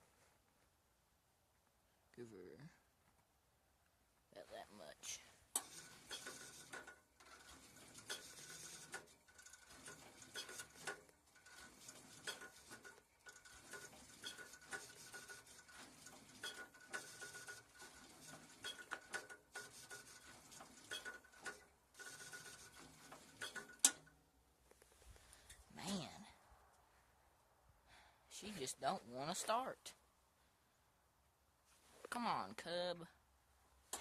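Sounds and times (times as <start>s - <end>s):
starter cranking engine: 5.5s - 24.2s.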